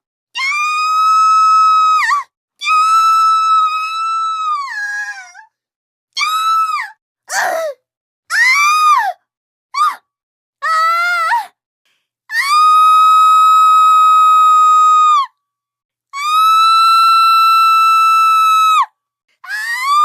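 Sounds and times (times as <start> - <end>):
shrill screams: 0.4 - 5.3, 12.3 - 15.3, 16.2 - 20.0.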